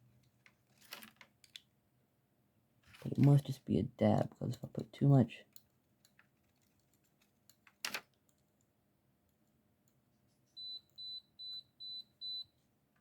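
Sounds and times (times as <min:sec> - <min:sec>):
multimeter beeping: 0:10.6 - 0:12.5.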